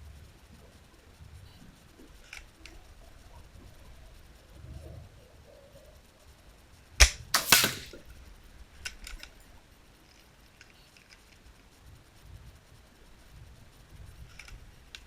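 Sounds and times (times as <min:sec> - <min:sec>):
air rifle shot: 0:07.0 - 0:08.0.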